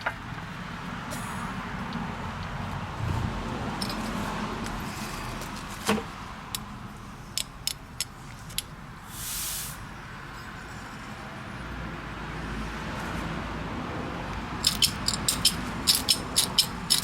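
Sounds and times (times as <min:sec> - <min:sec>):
steady background noise: 0:00.0 - 0:17.0
short hiss: 0:09.1 - 0:09.8
sharp metallic clicks: 0:14.6 - 0:17.0.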